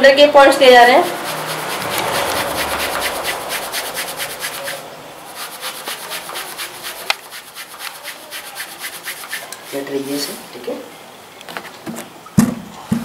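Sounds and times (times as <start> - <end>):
rubbing and scratching friction: 0.4 - 10.4.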